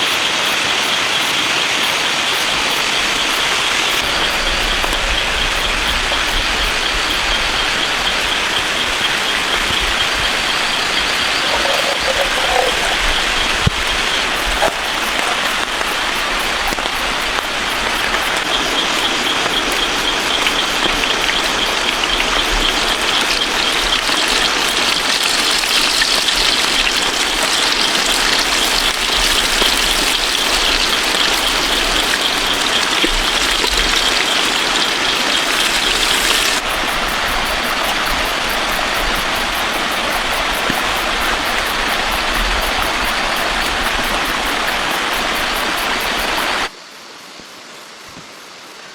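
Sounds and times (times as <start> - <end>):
heavy rain falling: 1.0 - 39.7.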